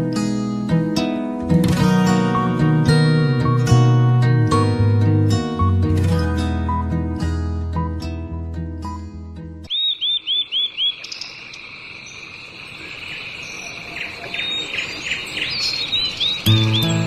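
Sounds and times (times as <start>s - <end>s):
music: 0.0s - 9.7s, 16.4s - 17.0s
birds chirping: 9.7s - 17.0s.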